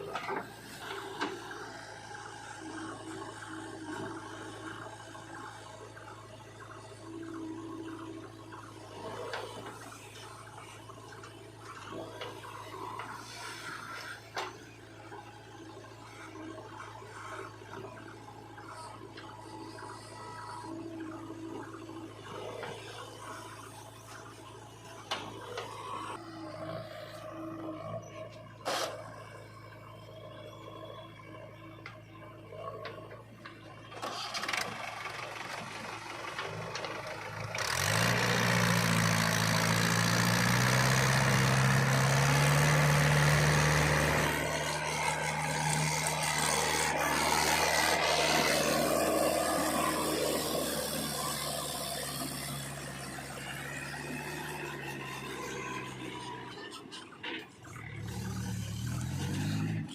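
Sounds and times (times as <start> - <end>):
heavy diesel engine revving: 34.0 - 59.9.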